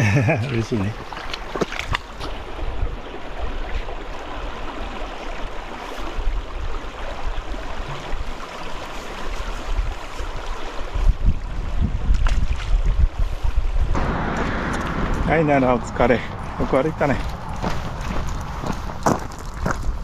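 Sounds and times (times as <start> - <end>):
flowing water rushing: 0.9 - 11.0
wind rumble on microphone: 10.8 - 20.0.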